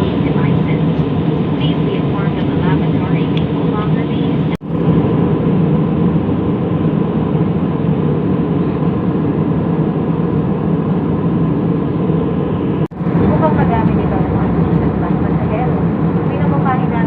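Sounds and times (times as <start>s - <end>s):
jet engine drone: 0.0s - 17.0s
rushing air: 4.6s - 16.7s.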